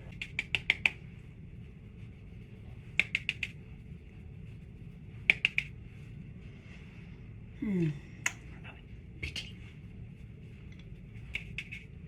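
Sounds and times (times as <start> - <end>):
sharp clicks in quick runs: 5.2 - 5.8.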